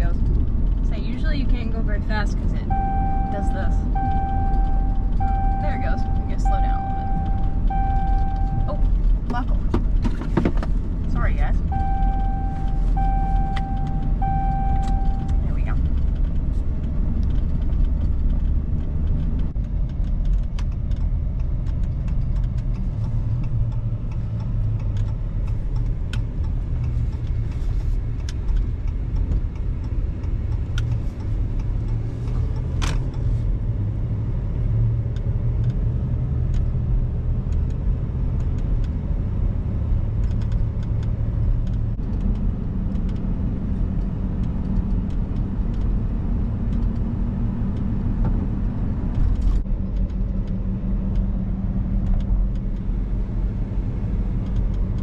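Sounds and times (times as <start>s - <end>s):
road and engine rumble in cab: 0.0s - 55.0s
small rattles and clicks: 15.2s - 33.4s.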